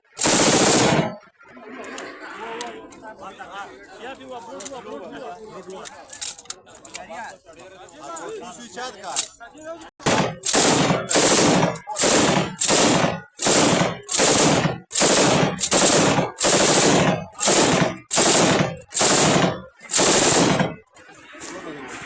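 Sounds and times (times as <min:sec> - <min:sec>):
automatic rifle fire bursts: 0:00.1 - 0:01.2, 0:10.0 - 0:20.8.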